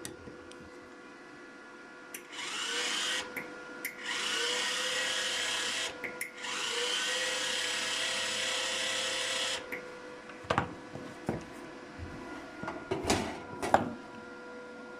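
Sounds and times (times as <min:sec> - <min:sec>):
welder wire-feed motor whirring: 0:02.1 - 0:09.8.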